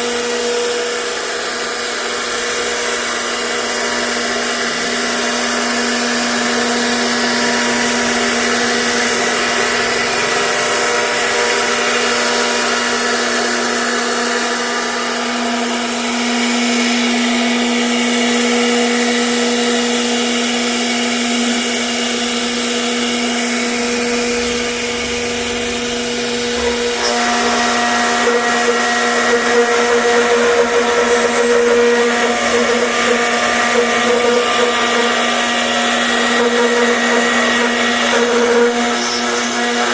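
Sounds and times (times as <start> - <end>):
router spindle whining: 0.0 - 39.9.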